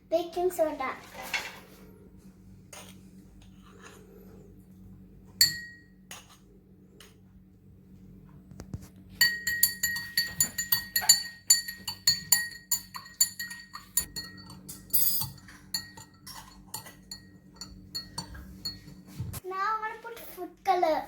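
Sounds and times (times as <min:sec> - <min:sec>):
spoon clinking against glass: 0:05.4 - 0:05.9, 0:09.2 - 0:19.0.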